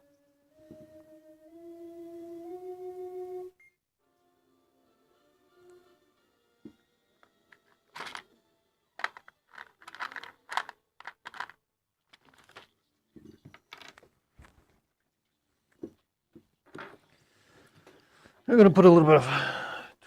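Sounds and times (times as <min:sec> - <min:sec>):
hands handling wire and parts: 0:07.5 - 0:08.3, 0:09.0 - 0:14.9, 0:15.7 - 0:18.0.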